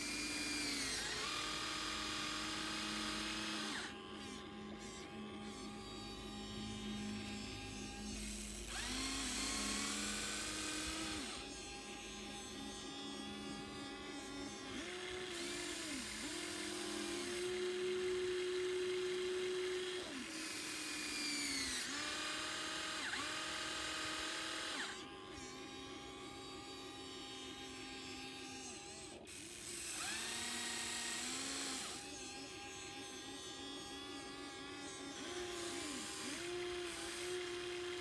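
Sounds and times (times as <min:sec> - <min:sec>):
electric motors whining: 0:00.0 - 0:38.0.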